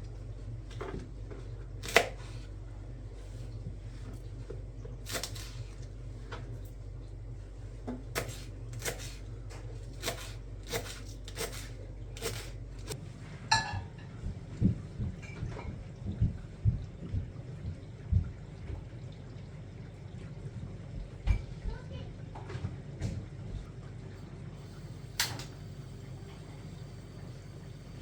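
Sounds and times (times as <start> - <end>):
dishes and utensils clinking: 13.5 - 14.2
steady low hum: 23.4 - 28.0.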